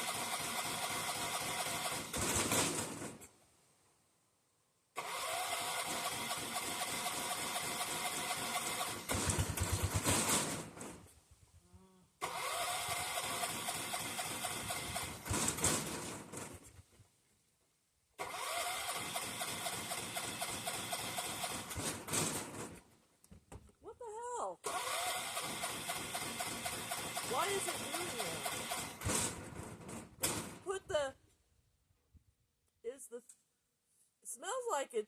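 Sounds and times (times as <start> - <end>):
mower engine cranking: 0.0 - 3.3, 5.0 - 11.1, 12.2 - 16.8, 18.2 - 22.9, 24.6 - 30.9.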